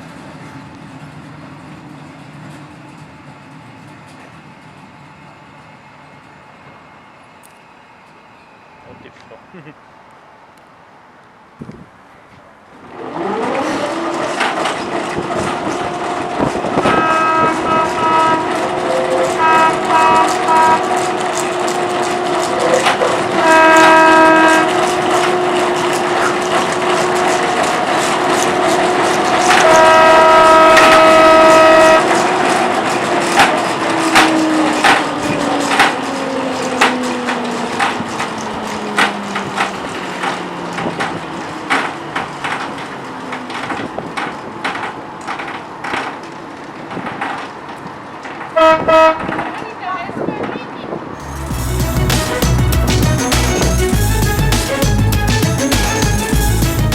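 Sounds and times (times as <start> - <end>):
tram electric motor whine: 0.0 - 11.8, 12.6 - 49.5, 51.1 - 56.9
clattering and clicking: 12.8 - 48.6
horn blasts: 15.2 - 35.1, 48.6 - 49.3, 51.2 - 56.9.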